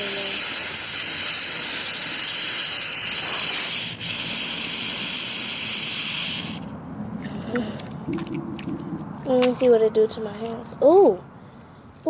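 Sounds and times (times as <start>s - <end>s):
aerosol spray hissing: 0.0s - 6.6s.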